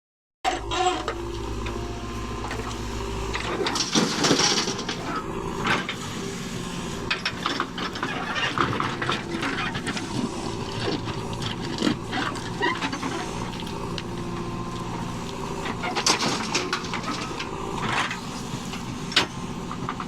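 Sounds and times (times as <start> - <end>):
diesel engine running: 0.5 - 20.0.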